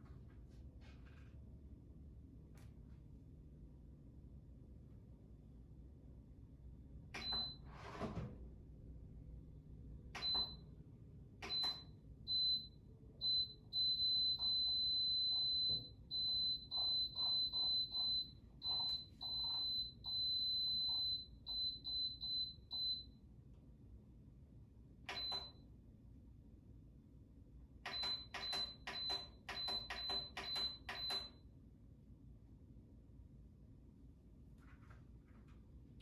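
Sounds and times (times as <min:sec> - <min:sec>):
toaster oven beeping: 0:27.9 - 0:31.4.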